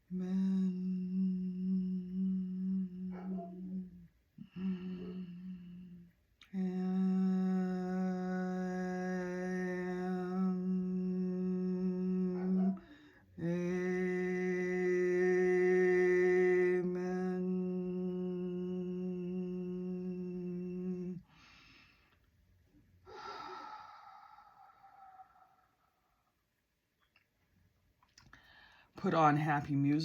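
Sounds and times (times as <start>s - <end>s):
woman humming a low note: 0.0s - 21.2s.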